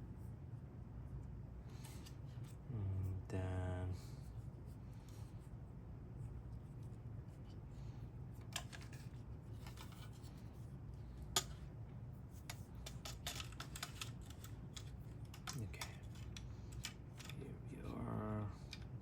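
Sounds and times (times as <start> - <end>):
plastic parts clicking and scraping: 8.4 - 10.4, 12.4 - 17.4.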